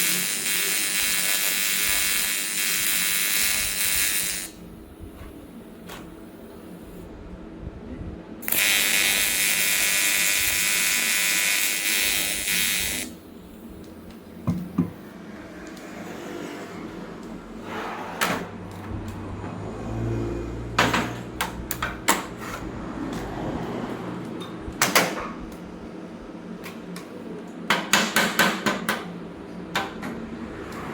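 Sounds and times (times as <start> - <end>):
welding arc buzzing: 0.0 - 4.8, 8.4 - 13.8.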